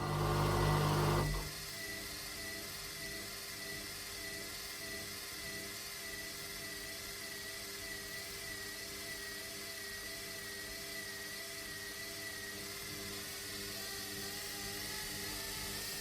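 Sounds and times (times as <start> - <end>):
washing machine motor whine: 0.0 - 4.5.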